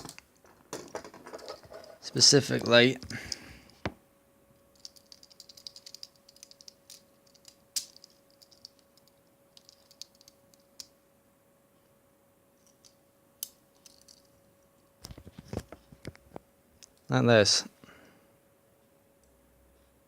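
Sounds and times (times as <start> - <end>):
handcuffs ratcheting clicks: 4.8 - 10.9, 13.8 - 14.3.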